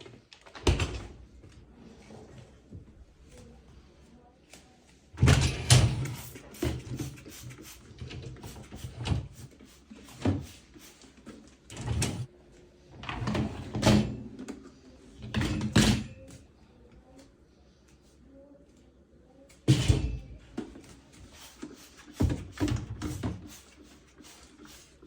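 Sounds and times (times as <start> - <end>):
dishwasher racks knocking and clattering: 5.2 - 6.2.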